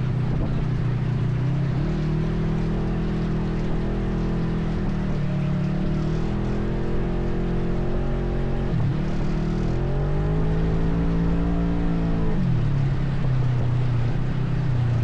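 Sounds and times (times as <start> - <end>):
atv engine running: 0.0 - 15.0.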